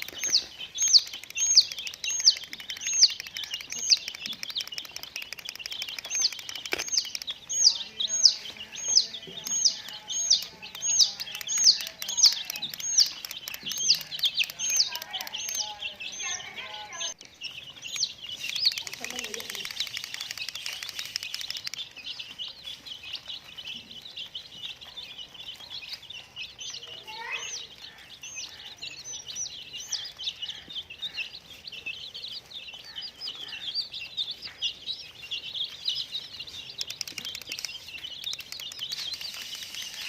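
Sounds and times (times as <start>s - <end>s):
baby chicks chirping: 0.0s - 40.0s.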